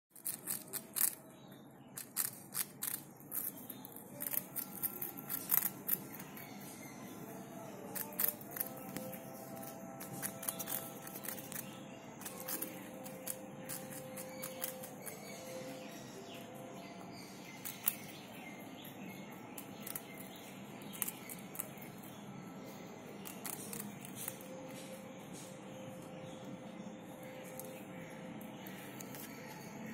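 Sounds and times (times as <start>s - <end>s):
rabbit clicking: 0.1s - 1.3s, 1.9s - 7.0s, 7.6s - 16.5s, 17.2s - 22.2s, 23.1s - 26.1s, 27.4s - 29.9s.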